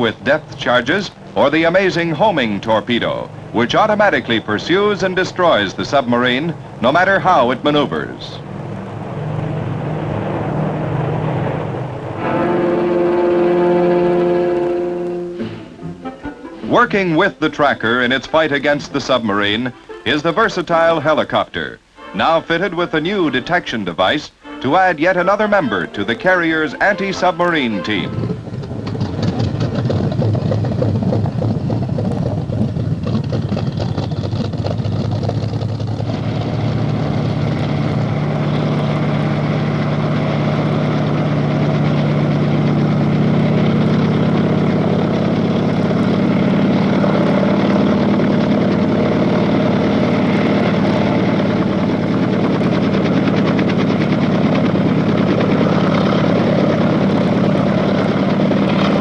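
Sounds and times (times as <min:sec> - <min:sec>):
low drone: 0:00.0 - 0:34.2, 0:34.9 - 0:59.0
helicopter engine and rotor: 0:36.4 - 0:59.0.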